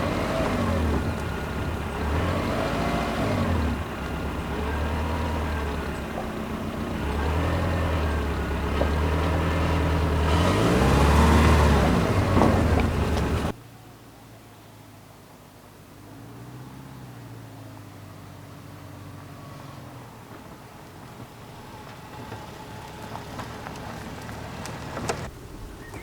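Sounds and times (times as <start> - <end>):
vehicle engine hum: 0.0 - 26.0.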